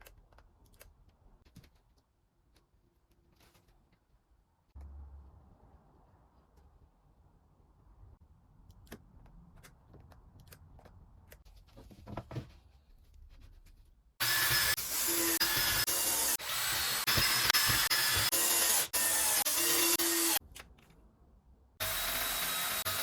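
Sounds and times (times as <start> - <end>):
power tool whining: 14.2 - 20.4, 21.8 - 23.0.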